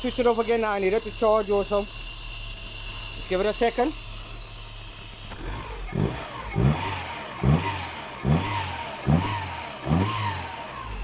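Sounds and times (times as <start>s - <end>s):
car engine revving: 4.0s - 11.0s.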